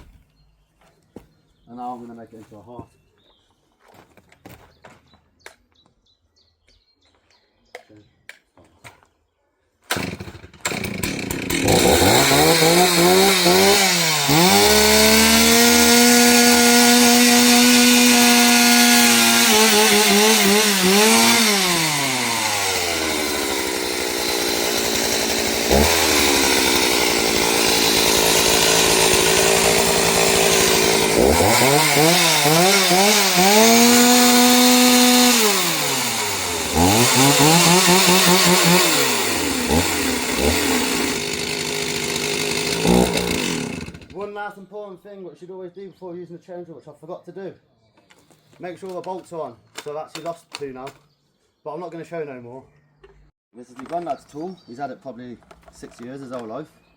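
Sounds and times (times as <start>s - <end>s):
chainsaw cutting wood: 9.9s - 44.3s.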